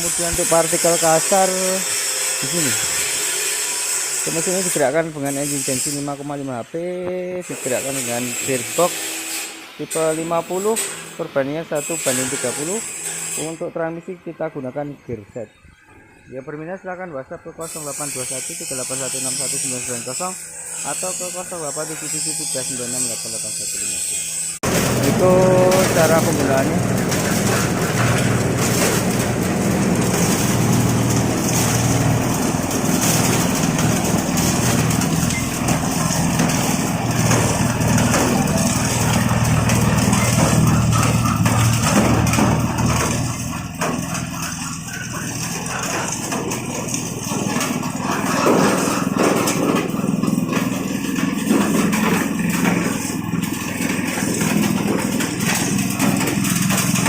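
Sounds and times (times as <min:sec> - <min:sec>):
petrol engine humming: 0:24.6 - 0:57.0.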